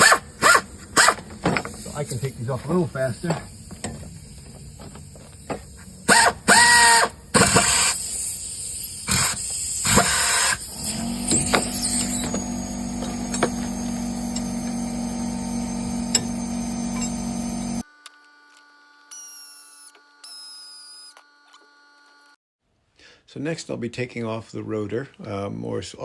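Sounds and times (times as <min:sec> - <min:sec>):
air impact wrench bursts: 0:00.0 - 0:17.8
steady motor hum: 0:00.0 - 0:17.8.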